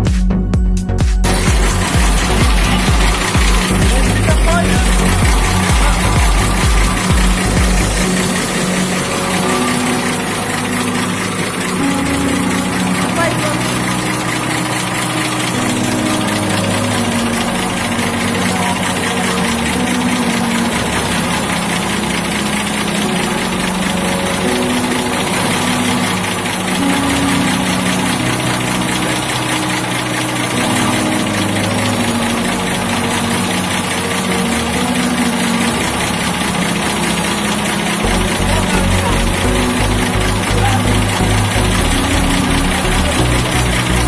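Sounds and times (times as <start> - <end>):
boat engine running: 0.0 - 44.0
low pulsing: 0.0 - 44.0.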